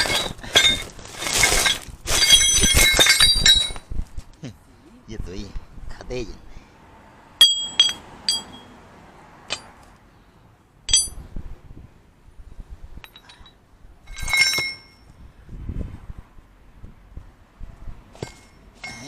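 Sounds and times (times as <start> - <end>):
metal parts clinking: 0.0 - 3.9, 7.4 - 8.7, 10.9 - 11.2, 13.0 - 15.1, 18.2 - 19.0.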